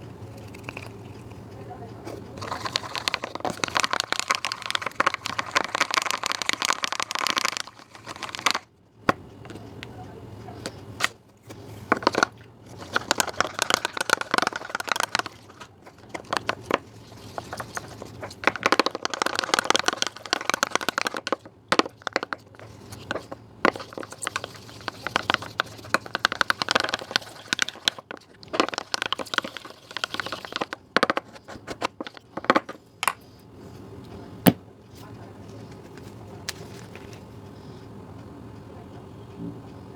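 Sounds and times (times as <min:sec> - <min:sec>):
slime crackling and popping: 0:02.3 - 0:08.7, 0:12.0 - 0:32.6.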